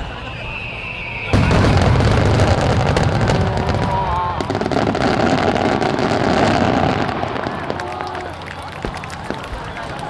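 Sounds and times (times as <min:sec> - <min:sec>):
crackle of firework bursts: 0:01.1 - 0:10.0
low rumble of firework booms: 0:01.4 - 0:07.6.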